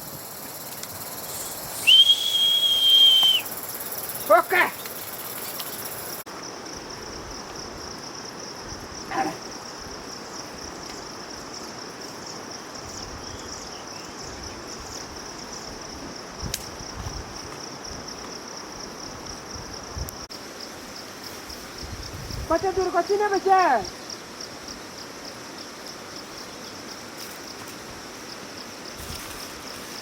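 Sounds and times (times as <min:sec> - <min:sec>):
insects chirring: 0:00.0 - 0:30.0
short insect call: 0:00.0 - 0:30.0.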